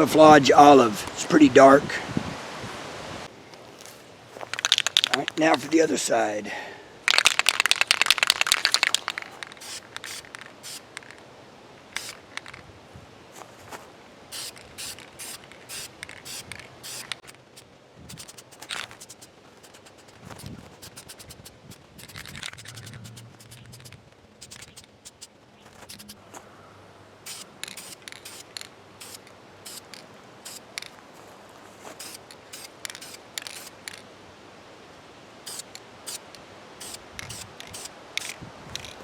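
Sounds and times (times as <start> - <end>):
handling noises: 3.5 - 6.2, 7.1 - 11.3, 11.9 - 12.7, 13.3 - 26.6, 27.2 - 34.1, 35.5 - 39.0
spray can rattling: 4.4 - 5.7, 7.1 - 11.2, 12.0 - 12.6, 14.3 - 26.2, 27.2 - 31.0, 31.9 - 34.1, 35.5 - 39.0
spray can hissing bursts: 7.2 - 11.2, 12.0 - 12.5, 14.3 - 26.2, 27.2 - 30.9, 31.9 - 34.0, 35.4 - 38.4.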